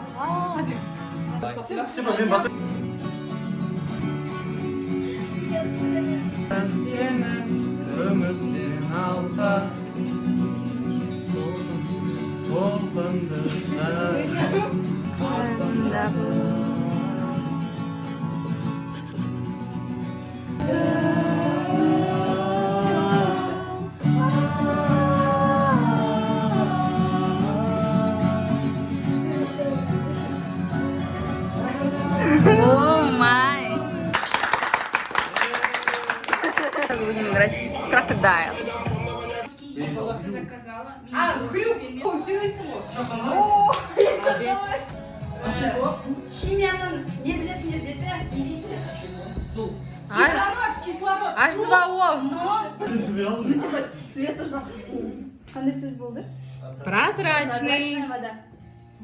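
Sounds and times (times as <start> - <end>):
guitar chords: 2.5 - 34.2
person singing: 11.4 - 17.7, 20.6 - 34.2.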